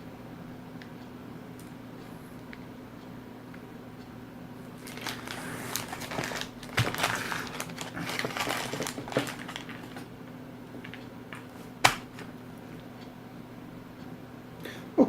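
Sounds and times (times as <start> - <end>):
packaging crinkling and rustling: 4.8 - 10.1, 10.8 - 12.3.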